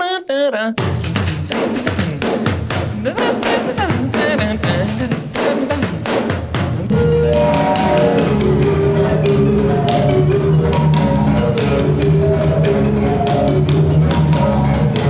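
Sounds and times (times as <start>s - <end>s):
other music playing: 0.8s - 15.0s
tambourine struck as a drum: 0.9s - 6.8s
piano line: 6.8s - 15.0s.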